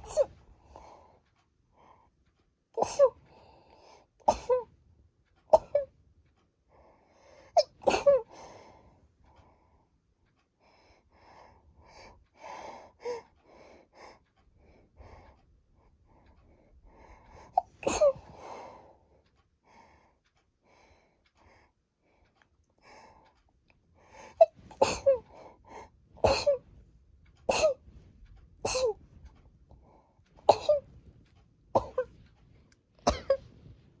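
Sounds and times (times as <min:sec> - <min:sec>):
breaths: 0:00.6 - 0:02.4, 0:03.2 - 0:04.1, 0:06.7 - 0:07.6, 0:08.3 - 0:09.9, 0:10.6 - 0:17.6, 0:18.2 - 0:24.5.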